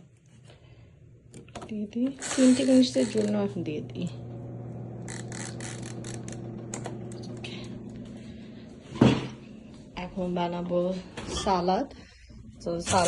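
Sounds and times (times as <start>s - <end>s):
air fryer humming: 1.9s - 10.6s.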